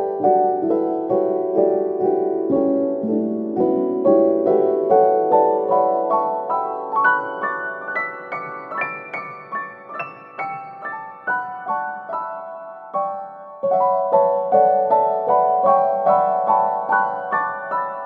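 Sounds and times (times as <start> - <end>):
gentle piano melody: 0.0 - 18.0.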